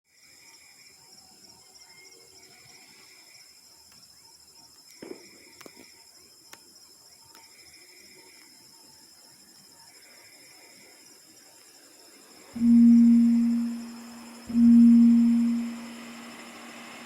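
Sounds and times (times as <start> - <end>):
crickets chirping: 0.1 - 17.0
low intermittent tone: 12.6 - 16.6.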